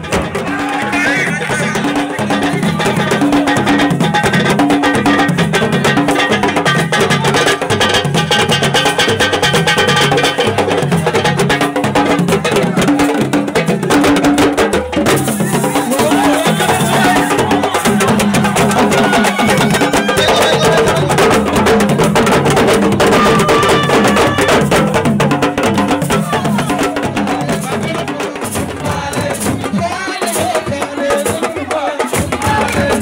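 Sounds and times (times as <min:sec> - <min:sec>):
lively music with fast percussion: 0:00.0 - 0:33.0
pitched melody: 0:15.2 - 0:22.0.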